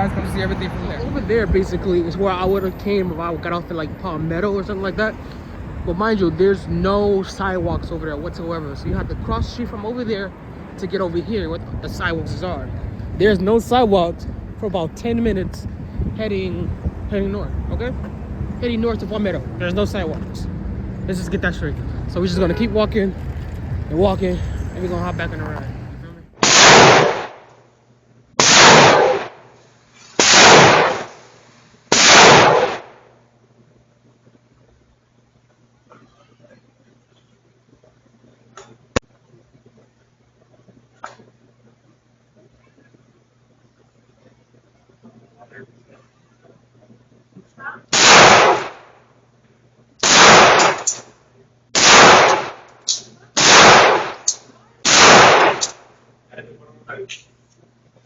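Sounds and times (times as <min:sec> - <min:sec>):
gunshots: 0:26.4 - 0:27.5, 0:28.4 - 0:29.5, 0:30.2 - 0:31.3, 0:31.9 - 0:33.0, 0:47.9 - 0:48.9, 0:50.0 - 0:51.1, 0:51.8 - 0:54.3, 0:54.9 - 0:55.8.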